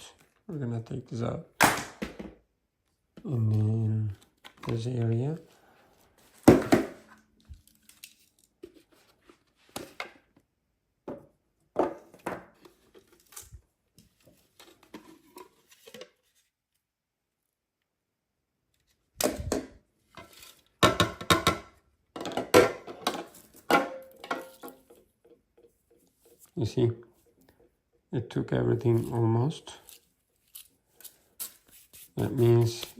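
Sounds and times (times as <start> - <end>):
plastic parts clicking and knocking: 20.8 - 26.0
parts clattering: 22.2 - 26.5.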